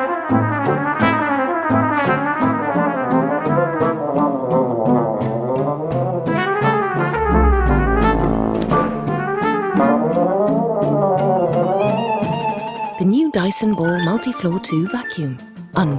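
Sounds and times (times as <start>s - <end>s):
brass-led background music: 6.9s - 10.4s.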